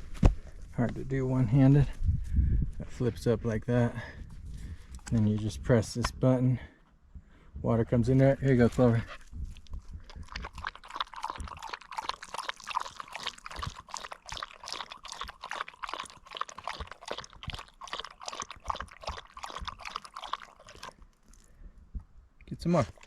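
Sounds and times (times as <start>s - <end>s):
dog lapping water: 8.6s - 21.6s, 22.4s - 23.0s.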